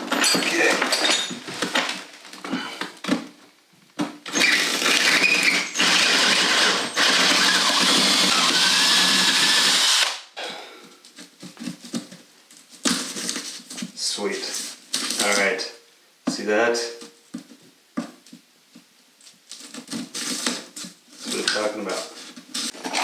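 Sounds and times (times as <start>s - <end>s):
power drill boring: 4.3s - 10.2s.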